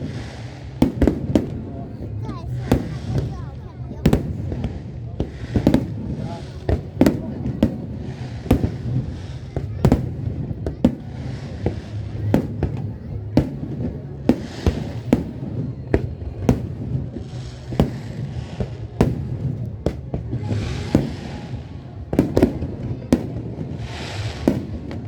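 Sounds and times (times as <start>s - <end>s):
fireworks bursting: 0.0s - 25.0s
fireworks hissing crackle: 0.0s - 25.0s.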